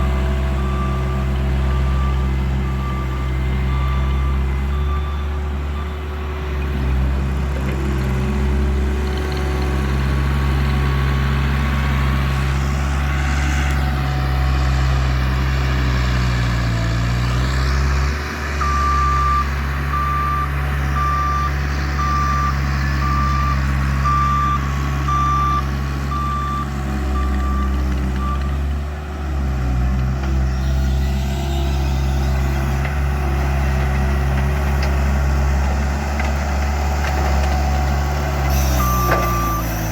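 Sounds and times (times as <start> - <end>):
reversing alarm beeping: 0.0 - 6.3, 18.5 - 28.7, 38.3 - 39.9
loader engine running: 0.0 - 39.9.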